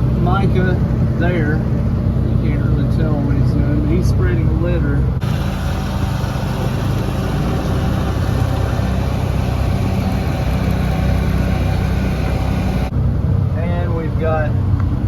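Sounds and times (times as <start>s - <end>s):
vehicle engine running: 0.0s - 14.1s.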